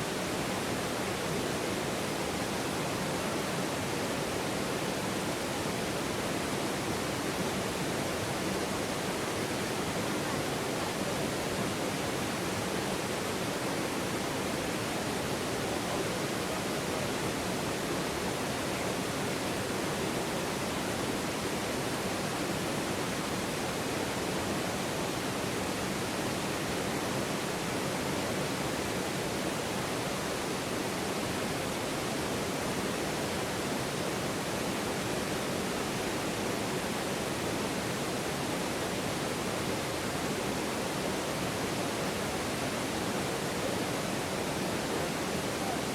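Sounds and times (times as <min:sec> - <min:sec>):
river water flowing: 0:00.0 - 0:45.9.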